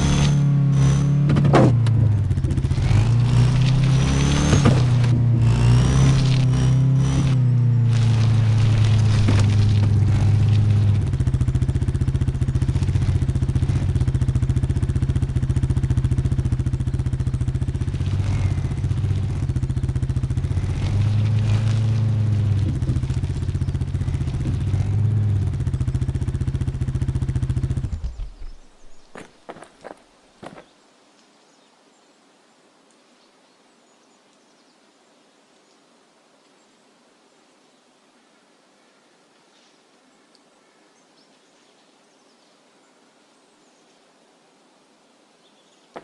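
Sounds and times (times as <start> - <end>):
vehicle engine idling: 0.0 - 29.7.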